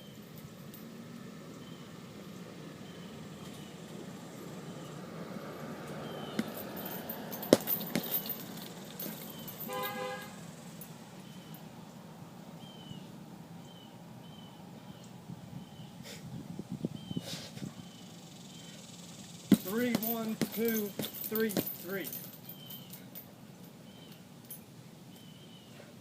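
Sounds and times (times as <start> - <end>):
punches thudding into punching bag: 6.3 - 9.5, 19.5 - 21.8
car horn honk: 9.6 - 10.5.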